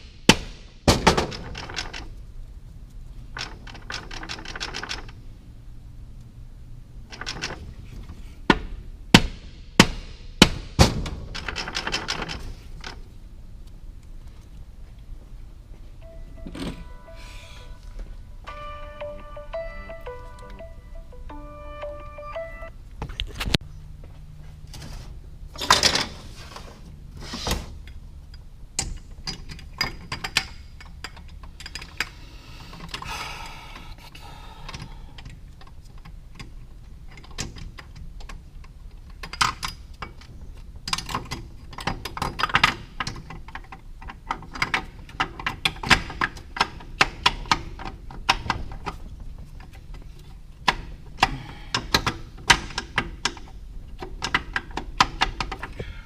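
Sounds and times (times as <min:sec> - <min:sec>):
metal parts clicking and knocking: 0:00.9 - 0:02.2, 0:03.3 - 0:05.2, 0:07.1 - 0:08.2, 0:11.0 - 0:13.1, 0:28.3 - 0:33.1, 0:34.7 - 0:55.8.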